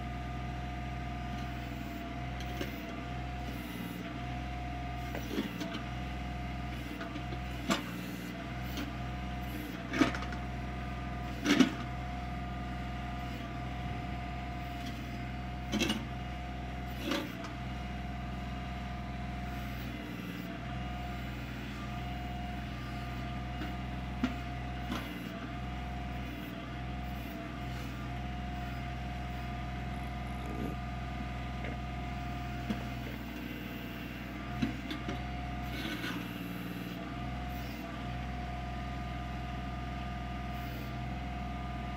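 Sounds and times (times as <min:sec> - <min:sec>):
tractor diesel engine running: 0:00.0 - 0:41.9
backhoe clunks: 0:06.7 - 0:10.6, 0:11.2 - 0:12.5, 0:13.3 - 0:28.4, 0:29.8 - 0:36.8.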